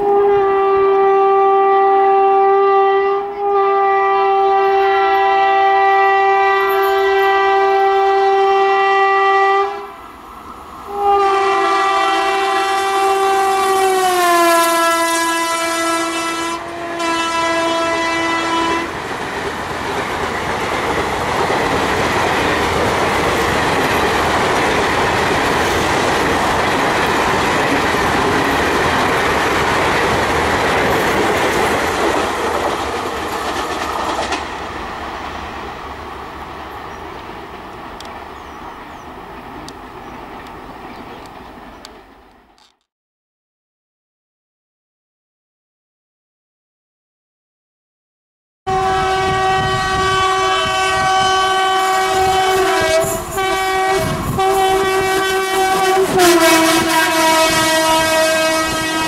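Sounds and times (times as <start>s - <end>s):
train horn blasts: 0.0s - 10.0s, 10.9s - 19.0s, 48.7s - 59.0s
train coaches rolling: 4.5s - 8.5s, 16.6s - 42.7s, 49.5s - 59.0s
wheels clacking over rail joints: 18.9s - 42.7s.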